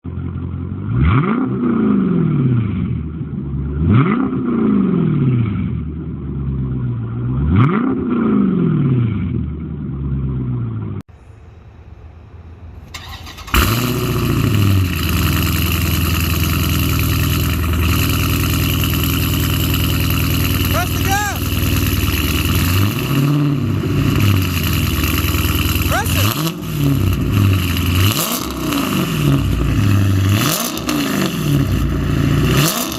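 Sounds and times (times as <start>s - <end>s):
engine exhaust revving: 0.0s - 32.9s
loud engine idle: 11.1s - 28.1s
engine starting: 12.8s - 15.2s.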